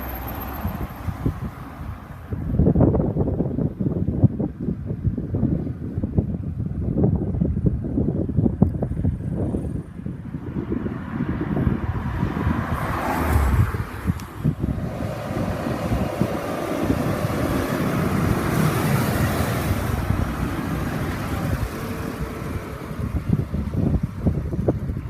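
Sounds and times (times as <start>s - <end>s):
cars driving past: 0.0s - 2.8s, 9.6s - 25.0s
wind buffeting microphone: 0.0s - 25.0s.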